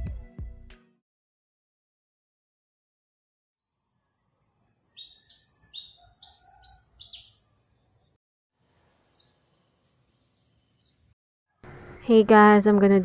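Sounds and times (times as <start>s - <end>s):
birds chirping: 4.0s - 8.2s, 8.8s - 13.0s.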